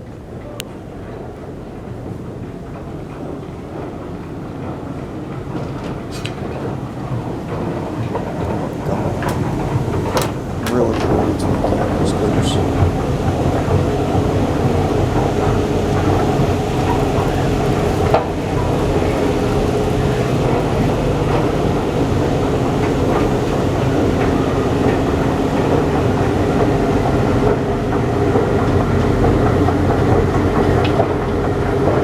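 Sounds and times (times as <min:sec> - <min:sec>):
escalator rumbling and clattering: 0:00.4 - 0:32.0
faint hum: 0:07.6 - 0:31.4.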